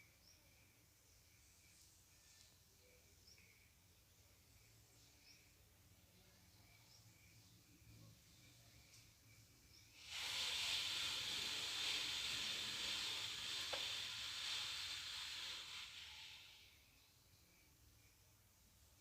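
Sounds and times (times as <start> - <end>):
steady hiss: 0.0 - 19.0.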